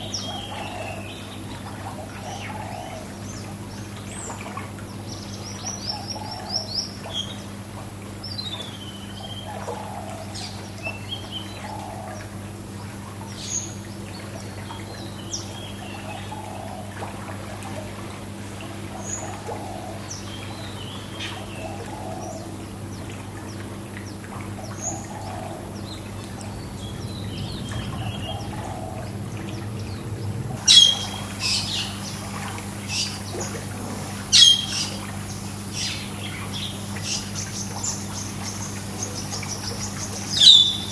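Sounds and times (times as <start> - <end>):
pool water: 0.0 - 40.9
steady low hum: 0.0 - 40.9
small birds chirping: 19.0 - 40.9.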